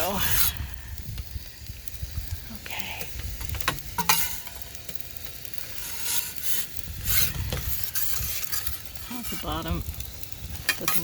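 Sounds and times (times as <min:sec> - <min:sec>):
fire rushing surges: 0:00.0 - 0:11.0
wood fire hissing and crackling: 0:00.0 - 0:11.0
wind rumble on microphone: 0:00.4 - 0:03.9, 0:09.6 - 0:10.7.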